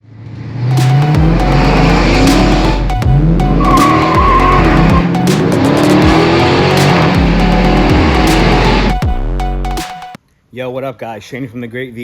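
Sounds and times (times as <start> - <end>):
car engine revving: 0.0 - 9.2
loud rock music: 0.8 - 10.1.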